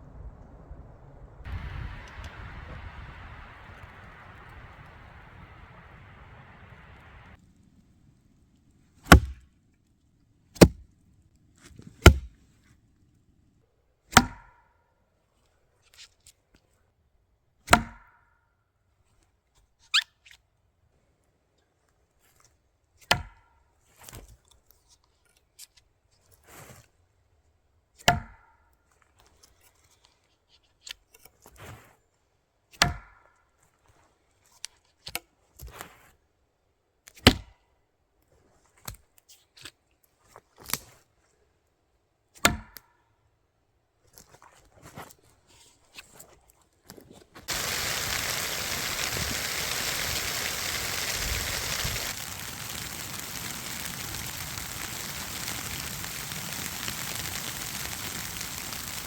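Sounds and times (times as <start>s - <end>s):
steady hiss: 0.0s - 7.4s, 47.5s - 59.0s
knife thudding into wood: 12.1s - 12.3s.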